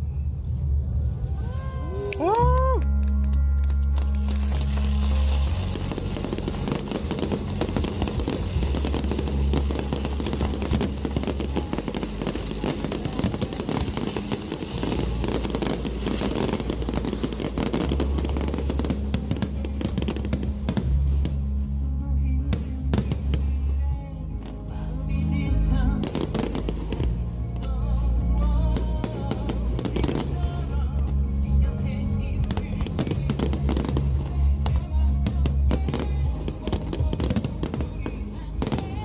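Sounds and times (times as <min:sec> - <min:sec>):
fireworks crackling and popping: 0:00.4 - 0:24.7, 0:25.4 - 0:39.0
loud music with heavy bass: 0:03.9 - 0:23.6.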